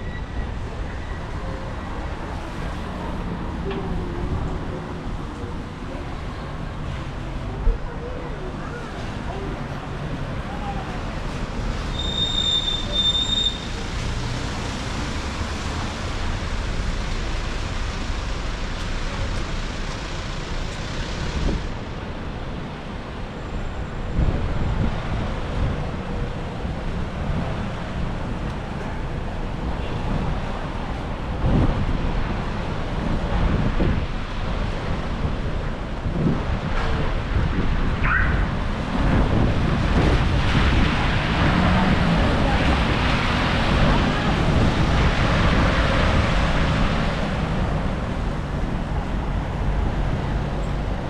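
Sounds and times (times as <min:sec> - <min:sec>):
storm wind and rain: 0:00.0 - 0:51.0
wind gusts rumbling on microphone: 0:13.7 - 0:51.0.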